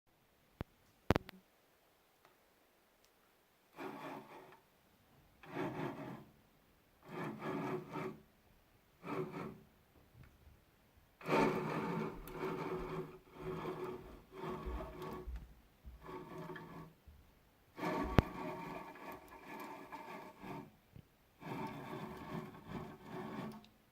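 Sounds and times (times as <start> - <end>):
harsh grinding of screw bearings: 7.0 - 8.2, 9.0 - 9.6, 11.2 - 15.4, 16.0 - 17.0, 17.8 - 20.7, 21.4 - 23.7.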